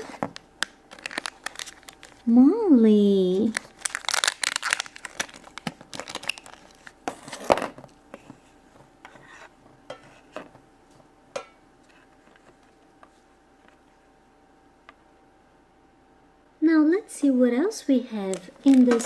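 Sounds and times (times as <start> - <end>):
plastic crinkling and clicking: 0.0 - 2.3, 3.4 - 8.3, 18.3 - 19.0.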